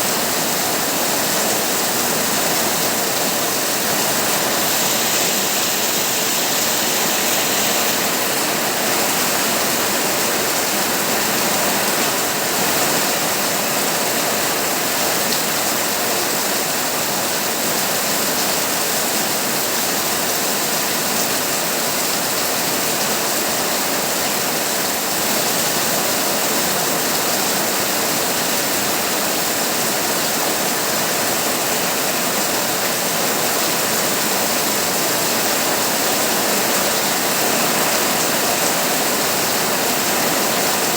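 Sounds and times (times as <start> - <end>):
heavy rain on a tin roof: 0.0 - 40.9.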